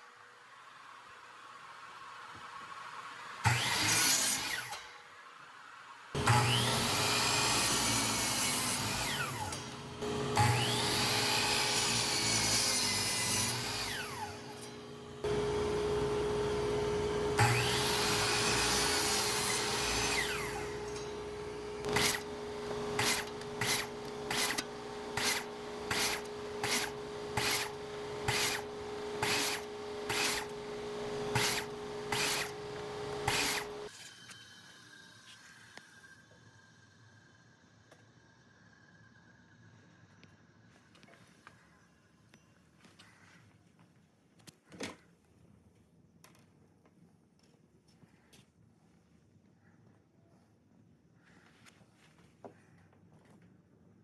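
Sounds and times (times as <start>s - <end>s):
miter saw cutting: 3.4s - 4.8s, 6.2s - 34.2s
steady hum: 13.4s - 33.9s
sharp strokes: 17.4s - 33.9s.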